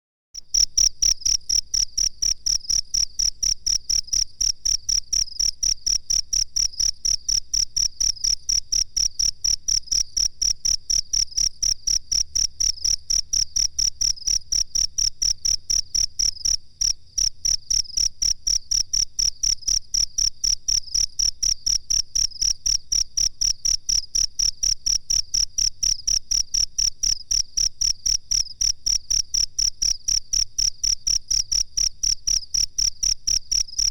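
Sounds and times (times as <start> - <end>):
cricket chirping: 0.4 - 33.9.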